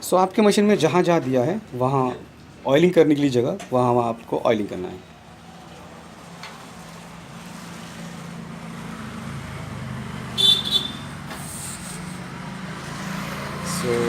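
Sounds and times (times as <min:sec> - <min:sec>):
short high-pitched toot: 0:10.4 - 0:12.0.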